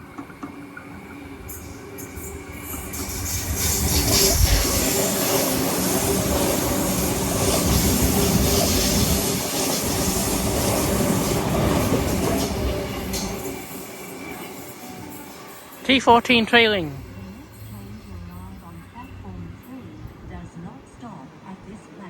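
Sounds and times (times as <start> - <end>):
train wheels clattering on rails: 0.0 - 15.8.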